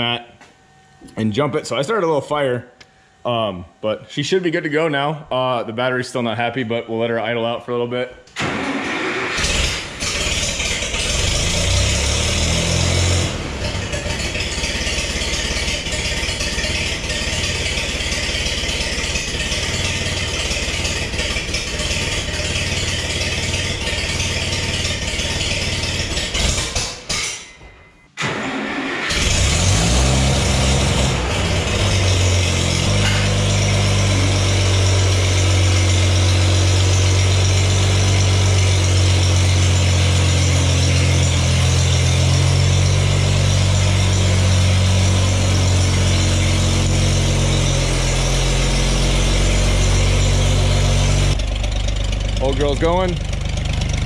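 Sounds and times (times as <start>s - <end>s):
tractor engine idling: 12.5s - 27.1s, 30.4s - 54.0s.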